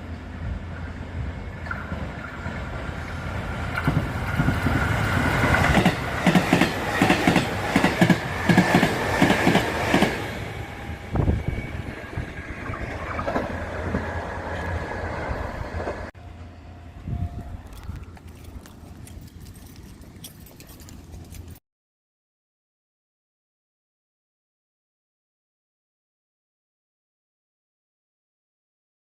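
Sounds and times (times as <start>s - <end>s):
train wheels clacking over joints: 3.7s - 10.2s.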